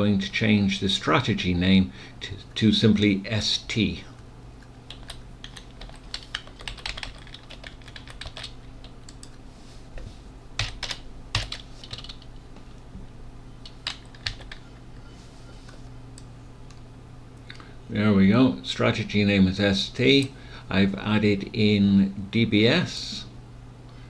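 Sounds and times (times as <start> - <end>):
steady low hum: 0.0 - 24.0
typing on keyboard: 4.9 - 9.3, 10.6 - 12.3, 13.7 - 14.7.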